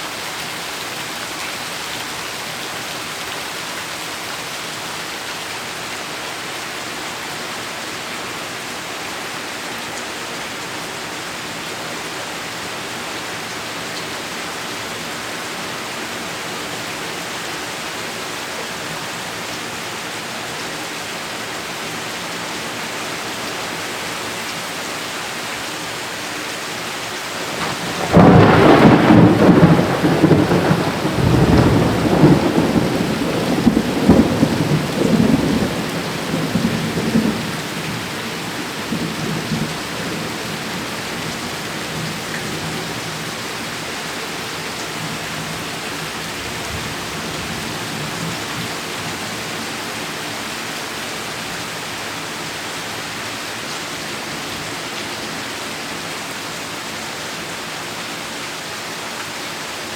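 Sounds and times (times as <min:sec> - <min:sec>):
heavy rain falling: 0:00.0 - 0:59.9
thunder clap rumbling: 0:27.4 - 0:40.8.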